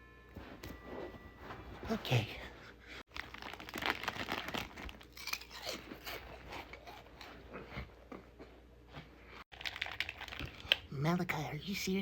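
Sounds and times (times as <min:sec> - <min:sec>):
person chewing crunchy food: 0:03.1 - 0:10.9.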